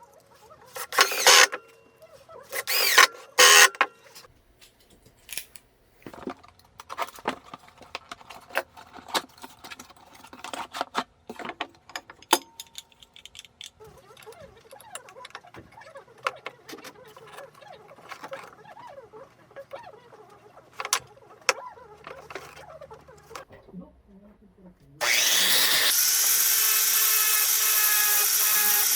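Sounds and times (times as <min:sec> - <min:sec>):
small hard objects clicking: 0:12.2 - 0:15.6.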